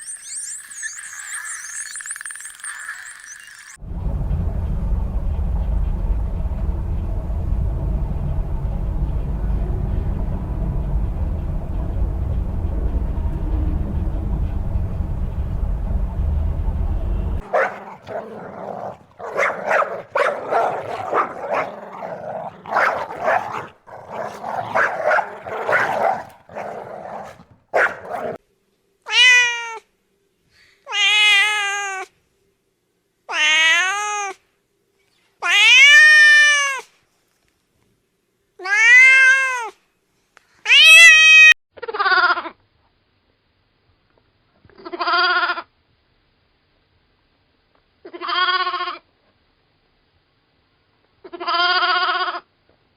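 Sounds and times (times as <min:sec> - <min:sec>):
short overlapping calls and clicks: 0:00.0 - 0:03.8
low rumbling noise: 0:03.8 - 0:28.4.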